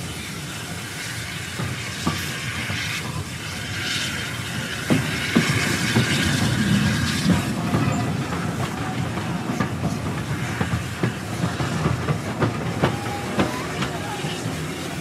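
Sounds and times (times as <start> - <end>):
train carriage rumbling: 0.0 - 15.0
wheels clicking over rail joints: 4.8 - 15.0.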